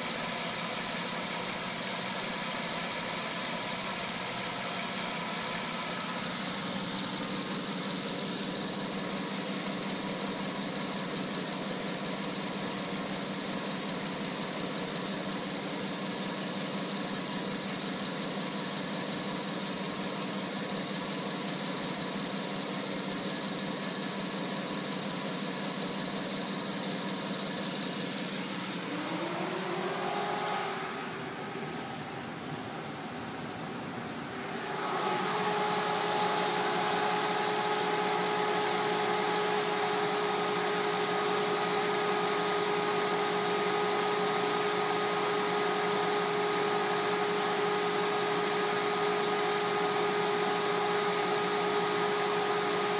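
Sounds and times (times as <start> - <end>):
car engine idling: 0.0 - 52.9
electric cooling fans running: 26.7 - 52.9
brief rising whine: 28.2 - 39.7.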